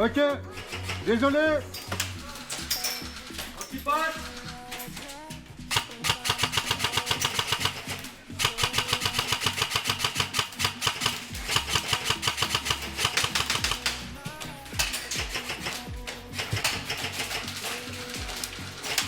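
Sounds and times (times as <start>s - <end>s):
airsoft gun firing full-auto: 5.7s - 14.0s.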